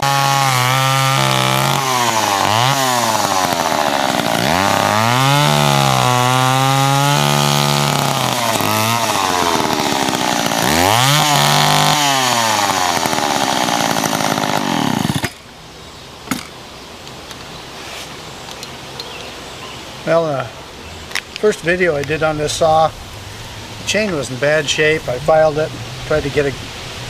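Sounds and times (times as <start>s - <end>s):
chainsaw cutting branches: 0.0s - 15.6s.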